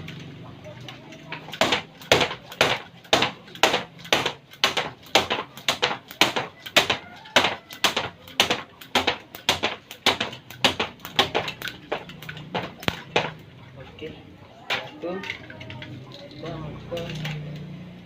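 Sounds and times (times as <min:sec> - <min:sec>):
rhythmic exercise impacts: 0:01.3 - 0:13.6.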